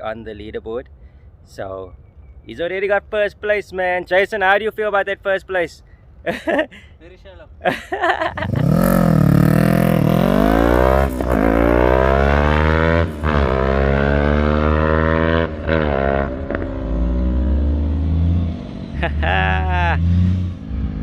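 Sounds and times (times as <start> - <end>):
motorcycle engine accelerating: 8.3 - 21.0.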